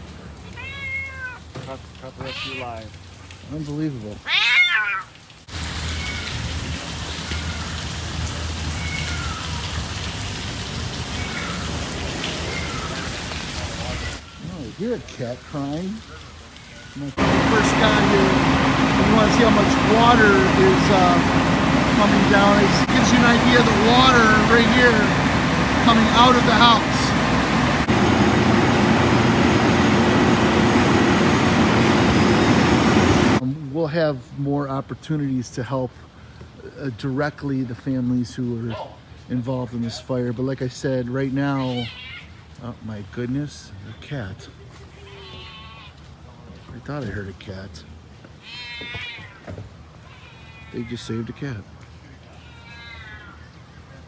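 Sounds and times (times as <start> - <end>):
water pouring and splashing: 0.0 - 33.4
low steady hum: 17.0 - 33.6.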